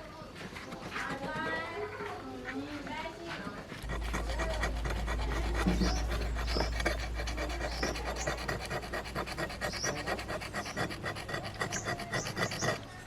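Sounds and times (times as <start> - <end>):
steady low hum: 2.6 - 13.0.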